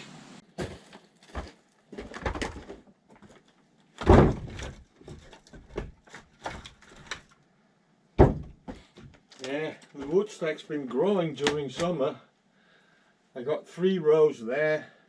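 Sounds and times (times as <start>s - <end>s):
firewood logs knocking: 4.0s - 7.2s.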